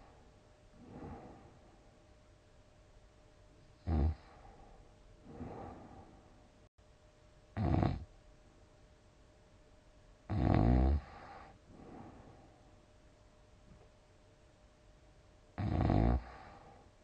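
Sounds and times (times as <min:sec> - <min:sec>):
soft breath: 0:00.0 - 0:02.0, 0:04.2 - 0:06.7, 0:11.1 - 0:12.9, 0:16.2 - 0:17.0
person snoring: 0:00.8 - 0:01.7, 0:03.8 - 0:04.6, 0:05.2 - 0:06.2, 0:07.6 - 0:08.1, 0:10.3 - 0:12.5, 0:15.6 - 0:16.9.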